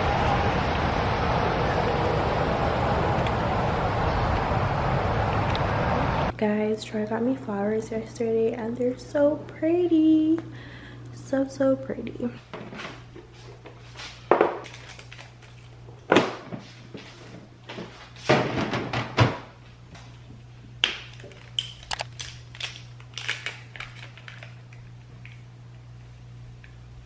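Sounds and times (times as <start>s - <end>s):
steady low hum: 0.0s - 27.0s
knocks and thuds of objects: 16.1s - 16.6s, 17.8s - 19.5s.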